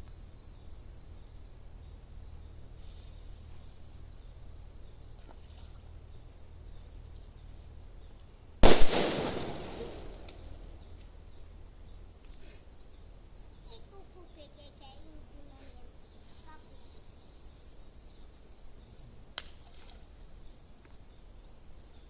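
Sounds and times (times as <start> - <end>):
firecracker bang with echo: 8.6 - 10.6.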